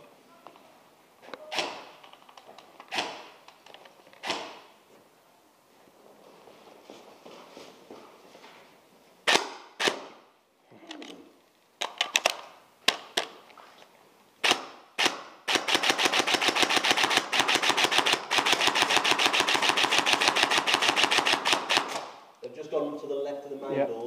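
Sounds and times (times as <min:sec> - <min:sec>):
airsoft guns firing: 0:01.5 - 0:02.0, 0:02.9 - 0:03.4, 0:04.2 - 0:04.8, 0:09.2 - 0:10.2, 0:14.4 - 0:22.3.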